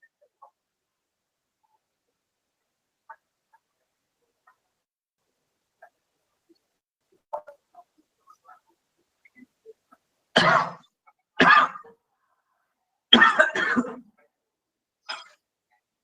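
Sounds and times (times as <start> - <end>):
person clearing throat: 10.4 - 11.9, 13.1 - 14.1, 15.1 - 15.4
person coughing: 10.4 - 11.9, 13.1 - 14.1.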